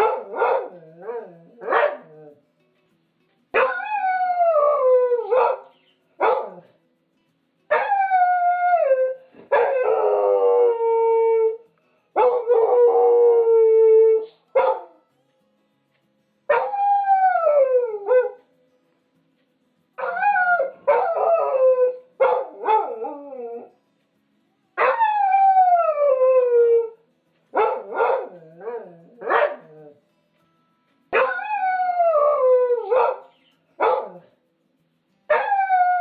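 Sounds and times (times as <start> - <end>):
dog yipping: 0.0 - 2.1, 3.6 - 4.1, 5.2 - 6.6, 14.2 - 14.9, 22.2 - 23.1, 29.2 - 29.7, 31.2 - 31.6, 32.8 - 34.3
dog howling: 3.6 - 5.6, 7.8 - 11.6, 24.8 - 27.0, 31.2 - 33.2.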